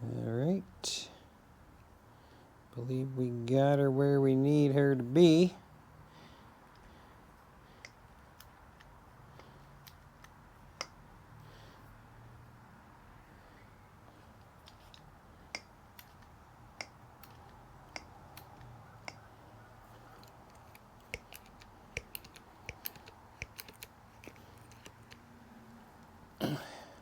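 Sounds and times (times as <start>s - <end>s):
hand crimper clicking: 14.6s - 19.3s, 20.0s - 26.1s.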